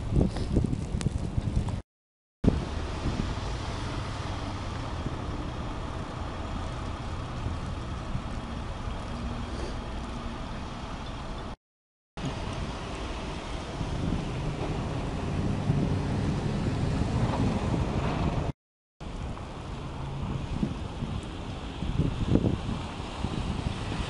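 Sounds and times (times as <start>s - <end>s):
car traffic rumble on snowy street: 2.5s - 11.6s, 12.2s - 24.0s.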